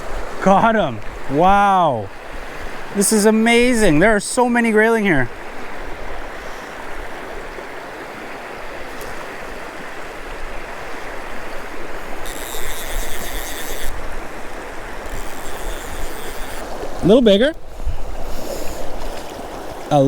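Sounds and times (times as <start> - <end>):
river current rushing: 0.0 - 20.0
wind rumble on microphone: 15.6 - 19.5.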